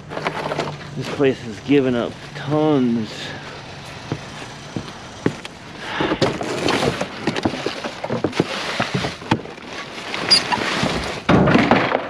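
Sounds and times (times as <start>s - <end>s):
debris rustling and scraping: 0.0s - 12.0s
scrap knocking and clattering: 6.1s - 12.0s.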